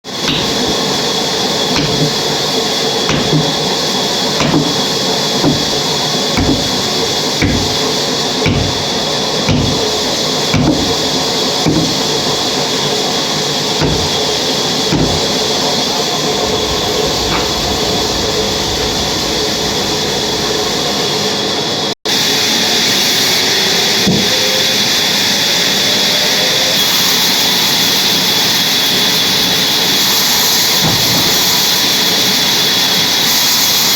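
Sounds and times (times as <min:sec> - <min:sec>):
sawmill saw whining: 0:00.0 - 0:33.9
knocks: 0:00.2 - 0:00.9, 0:01.8 - 0:02.3, 0:03.1 - 0:03.6, 0:04.4 - 0:10.0, 0:10.6 - 0:12.2, 0:13.8 - 0:17.7.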